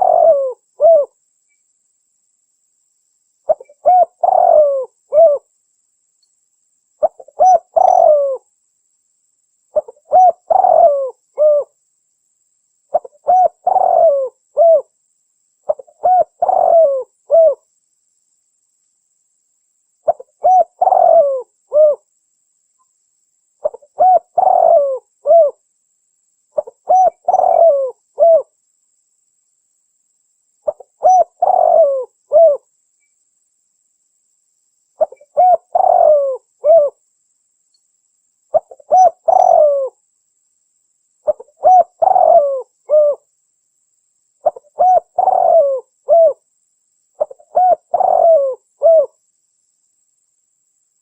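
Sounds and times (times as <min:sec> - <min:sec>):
dove cooing: 0:00.0 - 0:01.2, 0:03.5 - 0:05.5, 0:07.0 - 0:08.4, 0:09.7 - 0:11.8, 0:12.9 - 0:14.9, 0:15.7 - 0:17.6, 0:20.1 - 0:22.1, 0:23.6 - 0:25.6, 0:26.6 - 0:28.5, 0:30.7 - 0:32.7, 0:35.0 - 0:37.0, 0:38.5 - 0:40.0, 0:41.2 - 0:43.3, 0:44.4 - 0:46.4, 0:47.2 - 0:49.2.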